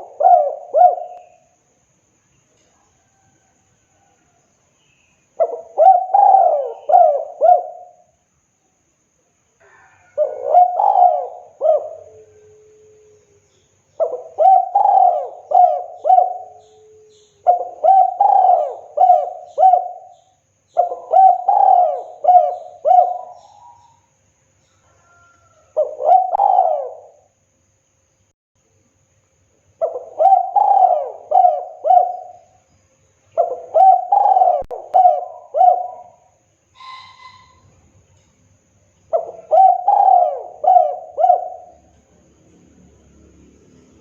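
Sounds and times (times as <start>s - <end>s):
dove cooing: 0.0s - 1.6s, 5.4s - 8.1s, 9.6s - 13.2s, 14.0s - 24.0s, 25.0s - 27.3s, 29.8s - 32.6s, 33.4s - 37.6s, 39.1s - 41.9s.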